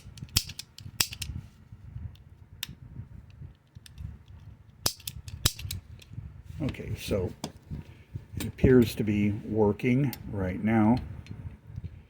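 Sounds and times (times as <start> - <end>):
cap gun mechanism clicking: 0.0 - 1.3, 4.8 - 5.8
handling rumble: 0.0 - 12.0.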